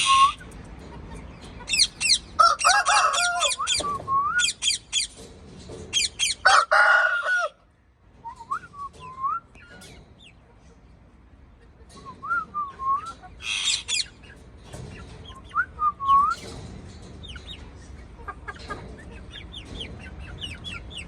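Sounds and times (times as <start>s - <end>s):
parakeet chirps and squawks: 13.4s - 14.2s.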